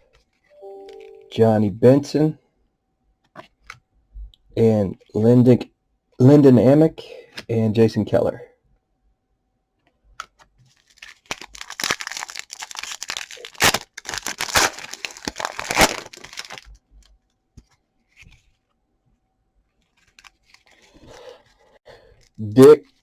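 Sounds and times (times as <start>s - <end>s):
wrapper tearing and crinkling: 10.7s - 16.7s.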